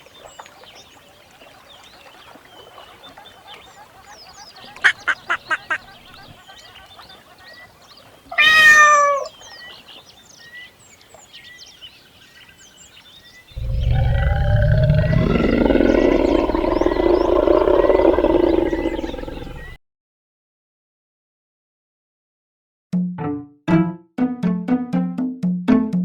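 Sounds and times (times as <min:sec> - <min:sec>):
short falling animal call: 0:08.3 - 0:09.3
deep animal roar: 0:13.6 - 0:19.8
faint bird chirps: 0:15.5 - 0:19.8.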